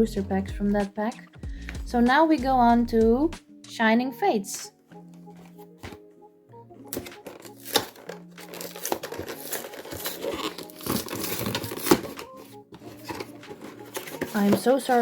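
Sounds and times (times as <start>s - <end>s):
plastic packaging crinkling and tearing: 6.9s - 15.0s.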